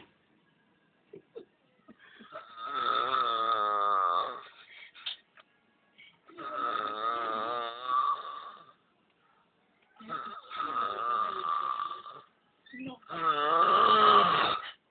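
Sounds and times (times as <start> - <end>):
person snoring: 2.2 - 4.6, 6.3 - 8.8, 10.0 - 12.3, 13.1 - 14.8.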